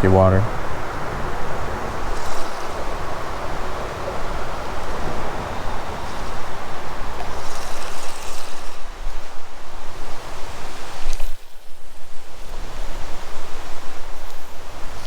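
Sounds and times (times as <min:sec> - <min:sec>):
creek water rushing: 0:00.0 - 0:07.2.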